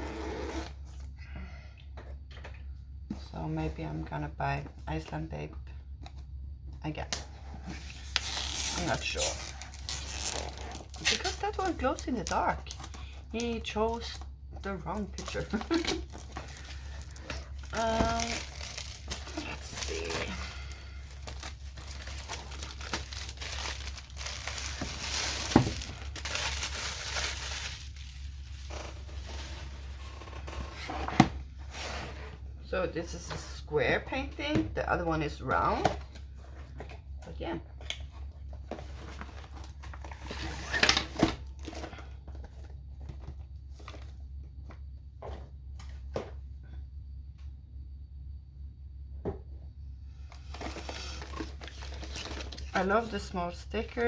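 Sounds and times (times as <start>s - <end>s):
steady low hum: 0.0s - 40.4s
plastic and paper rustling: 7.4s - 31.2s, 50.4s - 54.0s
plastic packaging crinkling: 7.8s - 14.2s, 15.0s - 30.1s, 50.4s - 53.2s.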